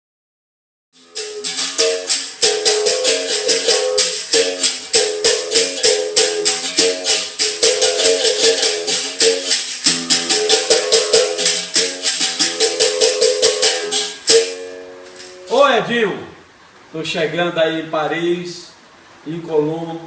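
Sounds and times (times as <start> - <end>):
shaker rattling: 1.0 - 15.4
berimbau struck rhythmically: 1.0 - 15.6.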